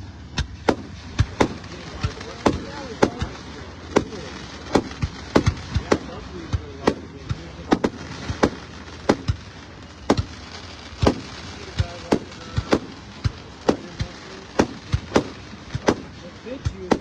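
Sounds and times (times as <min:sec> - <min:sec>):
fireworks bangs: 0:00.0 - 0:17.0.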